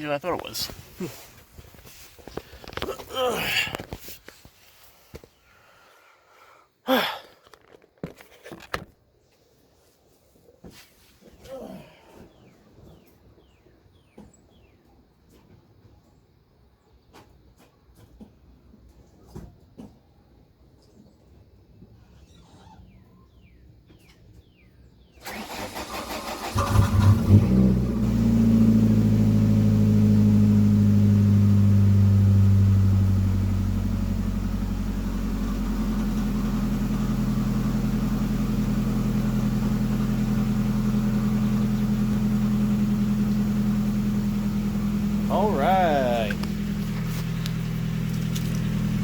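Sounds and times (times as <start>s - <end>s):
engine starter cranking: 25.2s - 27.6s
car engine idling: 25.4s - 49.0s.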